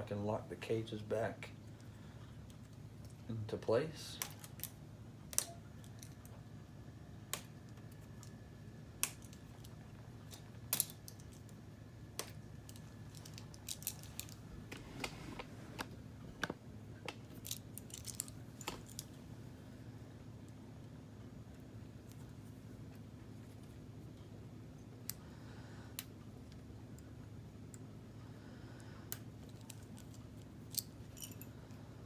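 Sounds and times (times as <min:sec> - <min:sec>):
faint steady hum: 0:00.0 - 0:32.0
plastic pieces snapping together: 0:04.2 - 0:06.1, 0:07.3 - 0:07.9, 0:09.0 - 0:09.7, 0:10.3 - 0:11.4.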